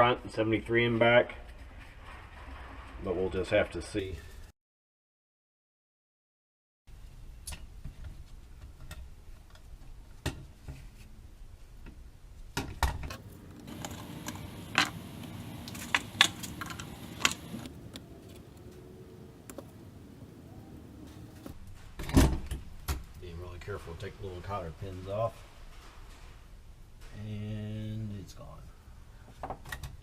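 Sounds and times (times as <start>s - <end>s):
hand tools clicking and tapping: 13.1s - 18.4s.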